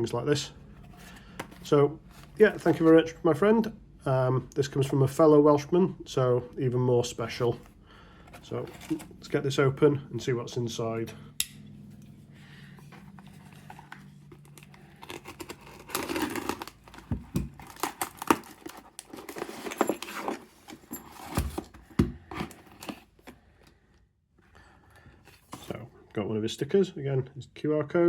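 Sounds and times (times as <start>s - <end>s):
low steady hum: 0.0s - 28.0s
packaging tearing and crinkling: 13.7s - 20.5s.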